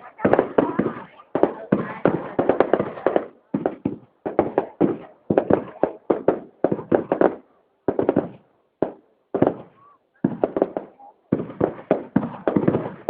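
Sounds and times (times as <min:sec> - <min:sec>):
fireworks bangs: 0:00.0 - 0:13.0.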